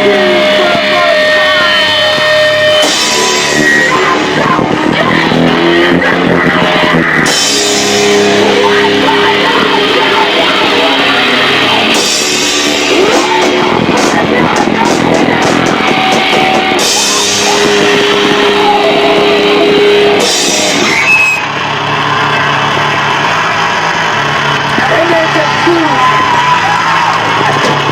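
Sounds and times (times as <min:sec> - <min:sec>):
cymbal crashes: 0:00.0 - 0:26.4
electric guitar: 0:00.0 - 0:27.9
loud distorted rock band: 0:00.0 - 0:27.9.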